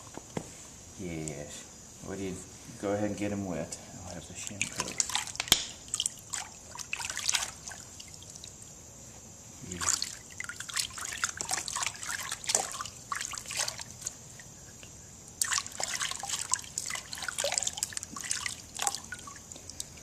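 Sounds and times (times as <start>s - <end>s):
water splashing and trickling: 4.3s - 8.6s, 9.6s - 14.5s, 15.4s - 20.0s.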